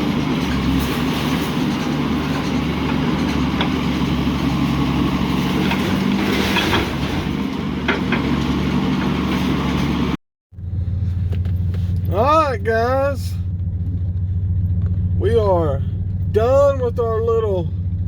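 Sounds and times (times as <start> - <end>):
metallic knocks and clanks: 0.0 - 10.0
heavy engine running: 0.0 - 18.0.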